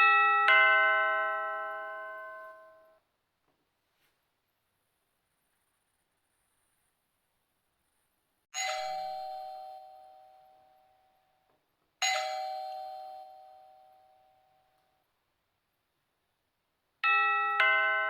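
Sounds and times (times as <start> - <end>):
doorbell chime: 0.0 - 3.0, 8.6 - 14.8, 17.0 - 18.0.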